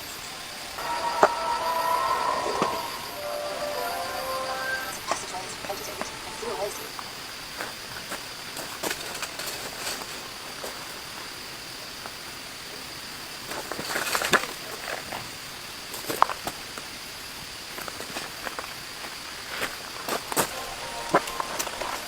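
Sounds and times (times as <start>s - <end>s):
rain hissing: 0.0s - 8.6s, 20.0s - 22.0s.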